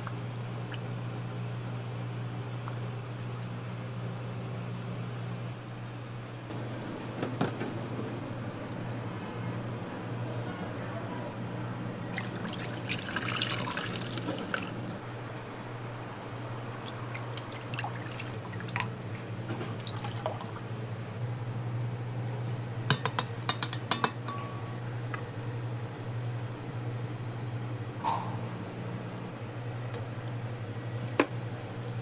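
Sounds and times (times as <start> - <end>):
low machine hum: 0.0 - 32.0
liquid pouring and dripping: 12.1 - 15.0, 16.6 - 19.0, 19.8 - 20.6.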